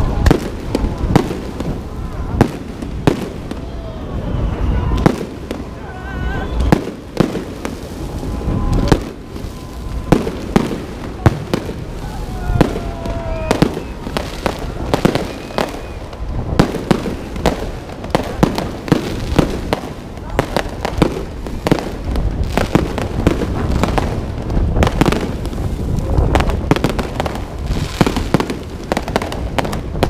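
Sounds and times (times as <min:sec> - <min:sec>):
fireworks bangs and crackles: 0:00.0 - 0:30.0
gliding firework whistles: 0:03.6 - 0:11.2, 0:11.8 - 0:17.7.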